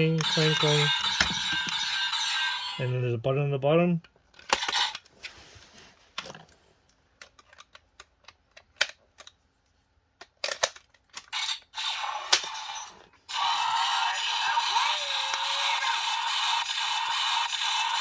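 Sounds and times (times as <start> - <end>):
electronic toy sound effects: 0.0 - 3.1, 11.4 - 18.0.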